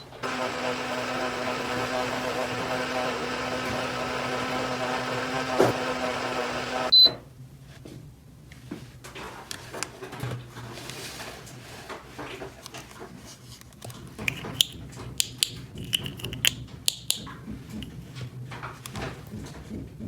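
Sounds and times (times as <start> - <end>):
toy appliance humming: 0.0 - 7.0
plastic pieces clicking: 13.7 - 17.9.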